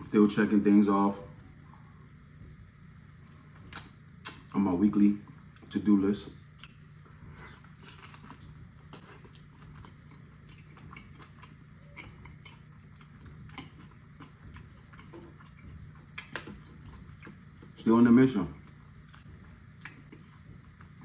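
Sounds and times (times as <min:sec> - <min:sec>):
person chewing food: 0:06.5 - 0:17.8, 0:18.6 - 0:21.0.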